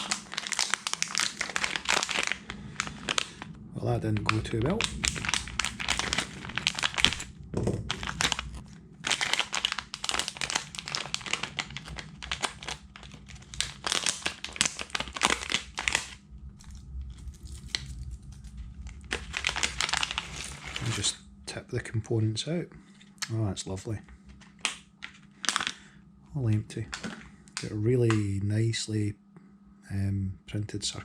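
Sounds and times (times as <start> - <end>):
plastic packaging crinkling: 0.0 - 21.2, 24.3 - 25.8.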